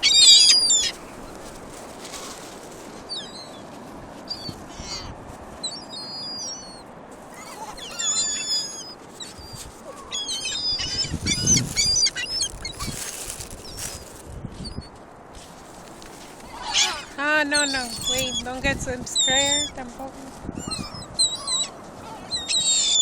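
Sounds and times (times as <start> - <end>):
gulls squawking: 0.0 - 1.2, 5.7 - 14.0, 16.4 - 19.9, 20.6 - 23.0.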